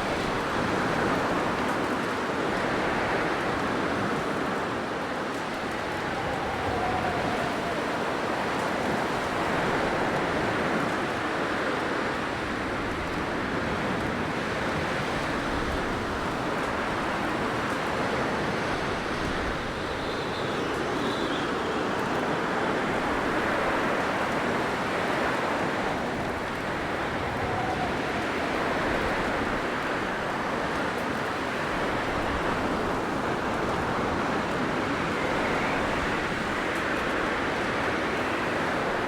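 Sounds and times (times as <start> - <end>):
blizzard wind blowing: 0.0 - 39.0
faint high whistle: 19.5 - 21.9.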